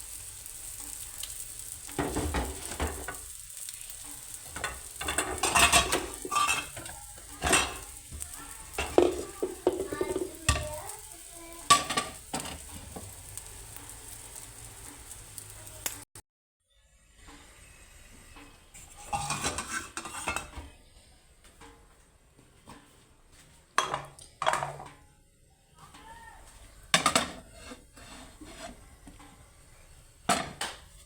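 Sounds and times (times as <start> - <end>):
food sizzling in a pan: 0.0 - 16.1, 17.0 - 20.5, 26.3 - 31.0
metal spatula scraping a pan: 2.0 - 10.9, 18.8 - 20.6, 26.9 - 29.4.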